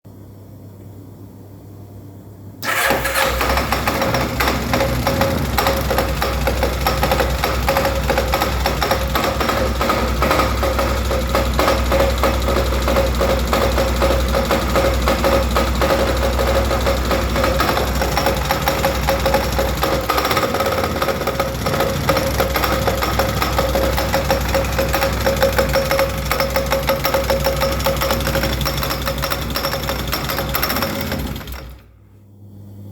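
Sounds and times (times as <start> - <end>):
atv engine idling: 2.6 - 31.8
fast steady engine knocking: 2.6 - 31.8.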